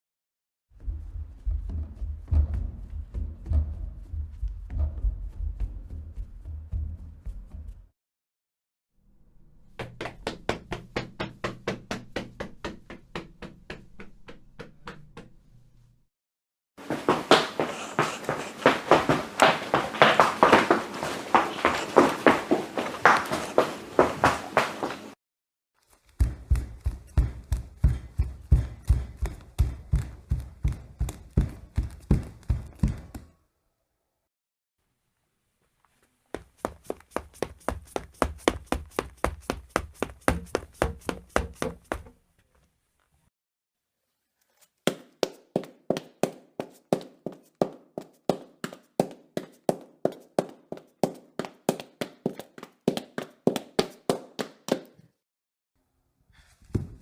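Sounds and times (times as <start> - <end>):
running footsteps: 0.9 - 7.9, 16.8 - 25.2, 26.0 - 33.3, 36.4 - 42.2.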